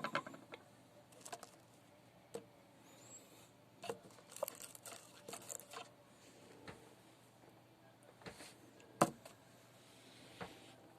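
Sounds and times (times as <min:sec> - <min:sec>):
small hard parts clicking: 0:03.8 - 0:05.9.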